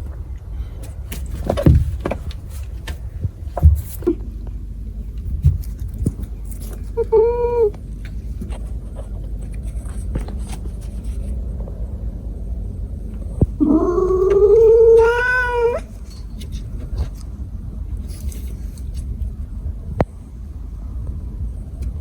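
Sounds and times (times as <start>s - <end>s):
steady low rumble: 0.0s - 22.0s
cat meowing: 7.0s - 7.8s, 13.6s - 15.9s.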